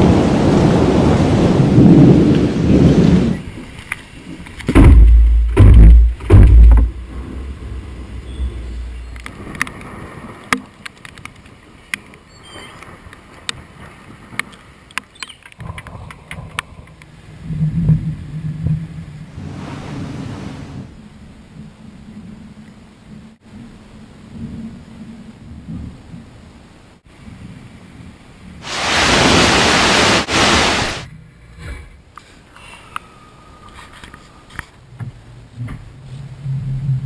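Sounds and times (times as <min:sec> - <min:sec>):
thunder rumbling: 0:00.0 - 0:03.5, 0:28.6 - 0:31.1
sharp ticks of rain: 0:03.6 - 0:04.7, 0:09.1 - 0:17.2.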